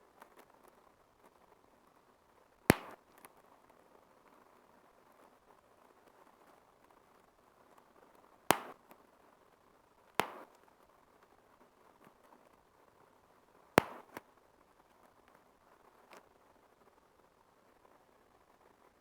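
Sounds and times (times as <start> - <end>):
bubble wrap popping: 2.7 - 3.0, 8.5 - 8.8, 10.2 - 10.5, 13.8 - 14.2.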